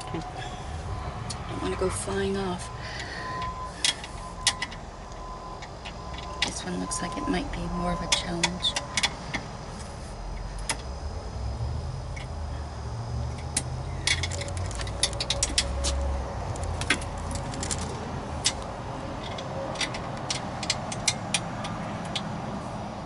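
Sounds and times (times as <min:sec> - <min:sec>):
low rumble: 0:00.0 - 0:20.3
hand tools clicking on steel bolts: 0:03.4 - 0:06.6, 0:13.3 - 0:22.3.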